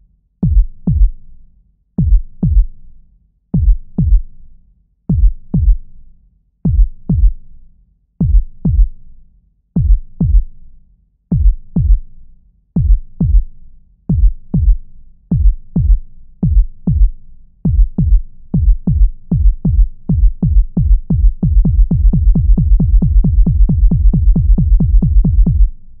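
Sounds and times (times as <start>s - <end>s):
heartbeat thumps: 0.4s - 1.2s, 2.0s - 2.7s, 3.6s - 4.2s, 5.1s - 5.8s, 6.7s - 7.4s, 8.2s - 9.0s, 9.8s - 10.4s, 11.3s - 12.0s, 12.8s - 13.5s, 14.1s - 26.0s.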